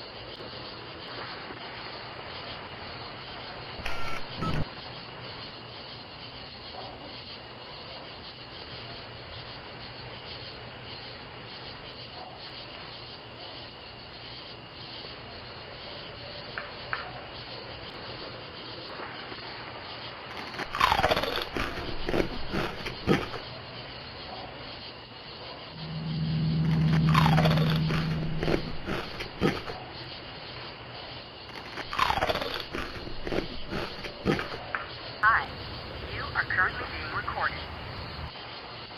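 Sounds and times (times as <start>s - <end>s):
steady background hiss: 0.0s - 38.9s.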